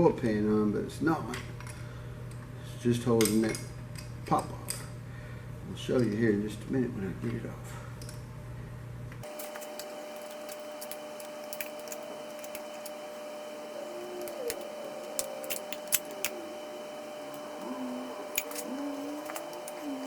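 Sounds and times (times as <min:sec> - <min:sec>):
faint hum: 0:07.6 - 0:20.0
metallic clicks of hand tools: 0:14.2 - 0:16.4, 0:18.3 - 0:20.0.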